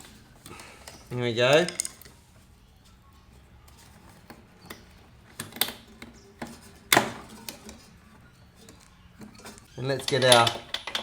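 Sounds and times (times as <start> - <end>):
hand tools clicking and knocking: 8.6 - 11.0.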